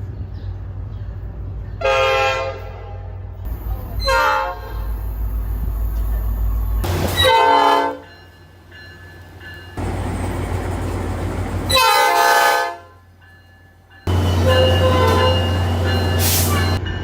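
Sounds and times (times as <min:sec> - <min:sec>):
train running noise: 0:00.0 - 0:17.0
train horn blasts: 0:01.8 - 0:03.3, 0:04.0 - 0:04.9, 0:06.8 - 0:08.1, 0:11.7 - 0:13.0, 0:14.1 - 0:16.8.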